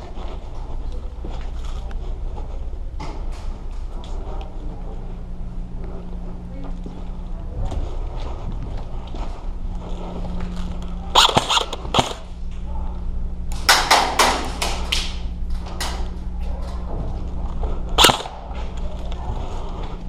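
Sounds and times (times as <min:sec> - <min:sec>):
steady low hum: 0:00.0 - 0:20.0
airsoft guns firing: 0:11.2 - 0:12.2, 0:18.0 - 0:18.4.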